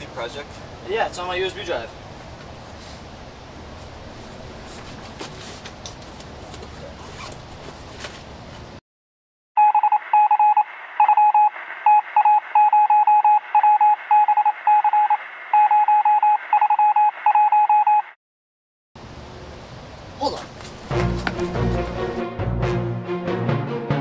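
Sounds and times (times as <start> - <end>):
electronic short beeps: 9.6 - 18.1.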